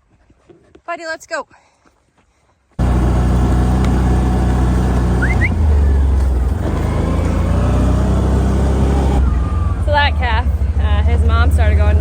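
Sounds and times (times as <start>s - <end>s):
vehicle engine running: 2.8s - 12.0s
two-note rising chirp: 5.1s - 6.2s.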